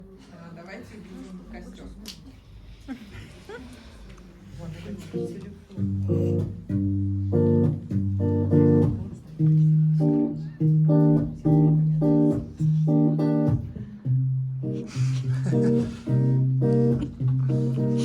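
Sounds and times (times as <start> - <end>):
guitar plucked chords: 5.8 - 18.0
low bass notes: 5.8 - 18.0.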